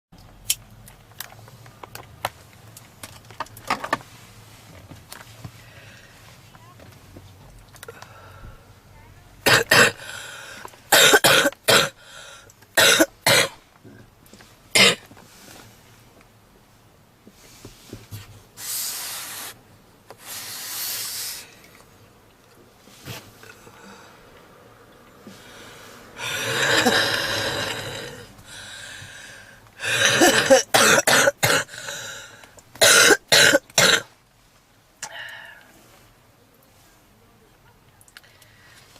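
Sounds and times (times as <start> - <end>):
long noisy breath: 5.6 - 6.3, 7.9 - 8.8, 10.0 - 10.8, 12.0 - 12.5, 18.6 - 19.6, 20.2 - 21.8, 23.4 - 24.4, 25.2 - 30.3, 31.6 - 32.6, 35.0 - 36.1
woman coughing heavily: 9.5 - 10.2, 10.9 - 12.0, 12.8 - 13.6, 14.8 - 15.0, 26.2 - 28.1, 29.8 - 32.1, 32.8 - 34.1.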